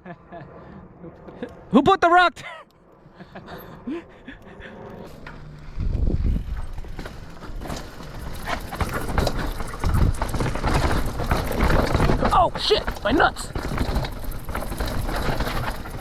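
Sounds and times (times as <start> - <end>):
bike knocking and rattling: 5.0 - 16.0
tyres crunching over dirt and rocks: 5.1 - 16.0.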